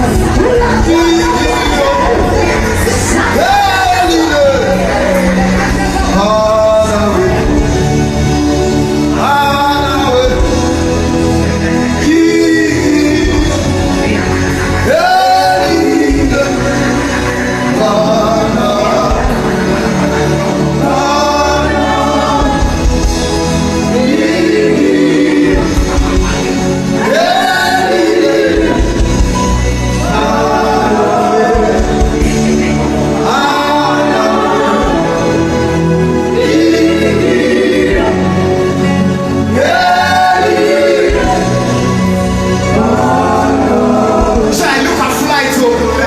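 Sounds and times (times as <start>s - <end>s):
choir singing gospel: 0.0s - 46.0s
instrumental accompaniment: 0.0s - 46.0s.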